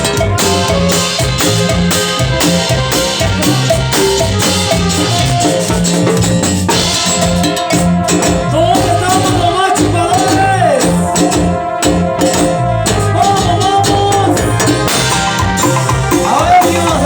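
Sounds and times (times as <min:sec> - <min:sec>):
cumbia band music: 0:00.0 - 0:17.0
lead line with bending notes: 0:00.0 - 0:17.0.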